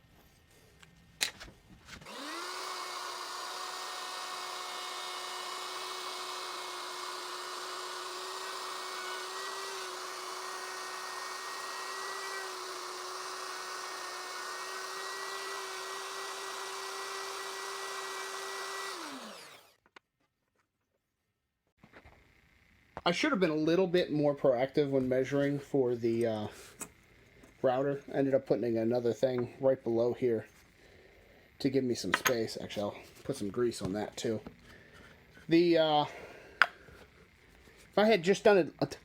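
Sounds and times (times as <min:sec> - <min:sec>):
electric router whining: 0:02.0 - 0:19.8.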